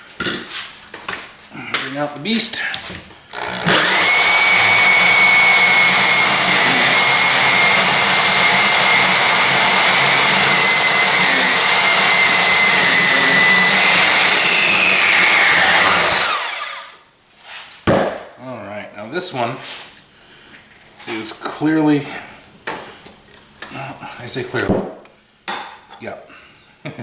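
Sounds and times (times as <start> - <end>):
power tool cutting steel: 3.3 - 17.0.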